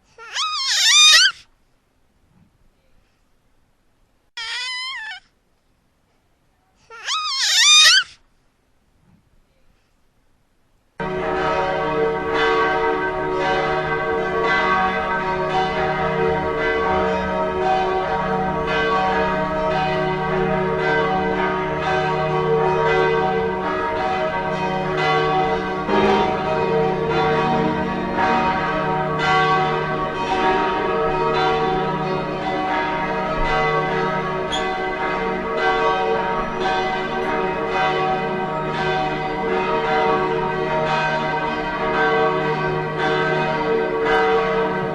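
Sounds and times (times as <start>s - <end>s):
peal of bells ringing: 11.0s - 44.9s.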